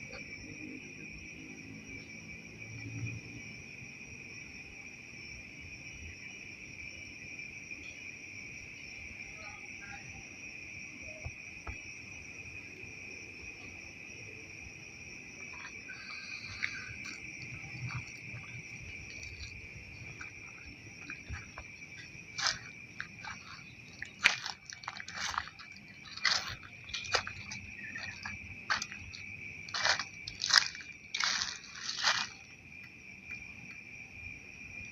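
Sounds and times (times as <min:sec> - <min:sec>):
night insects chirring: 0:00.0 - 0:34.9
loud irregular crunches: 0:15.5 - 0:32.5.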